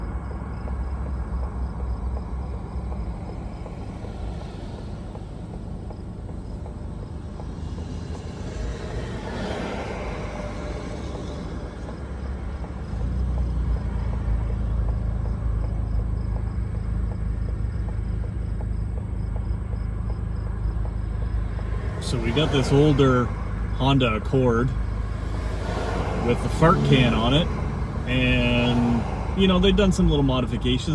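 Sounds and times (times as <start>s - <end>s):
car driving on road rumble: 0.0s - 30.9s
vehicle passing: 0.0s - 30.9s.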